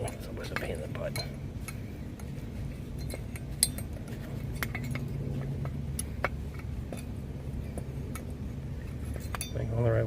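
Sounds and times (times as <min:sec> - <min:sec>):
light metallic clicks and taps: 0:00.0 - 0:02.4
steady low hum: 0:00.0 - 0:10.0.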